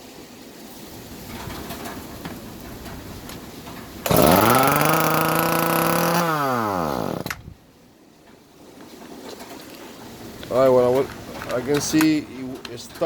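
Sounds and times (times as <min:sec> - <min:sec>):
chainsaw engine running: 0:04.0 - 0:07.4.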